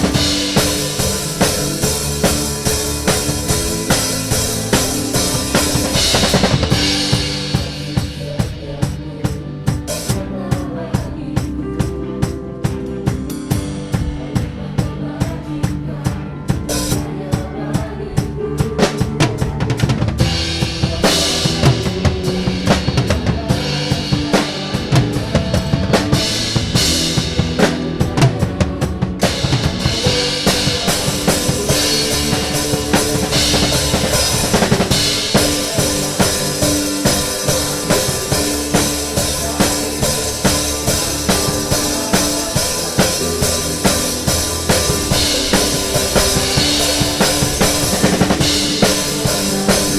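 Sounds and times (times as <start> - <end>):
bass and keyboard notes: 0.0 - 49.9
drum kit playing: 0.0 - 49.9.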